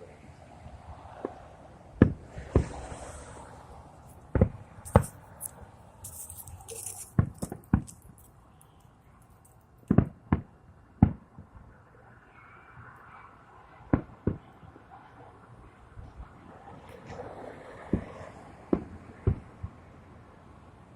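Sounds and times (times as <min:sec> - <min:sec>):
fireworks banging: 0:02.0 - 0:03.1, 0:04.0 - 0:08.3, 0:09.8 - 0:11.3, 0:13.9 - 0:14.5
fireworks crackling fizz: 0:04.1 - 0:08.3.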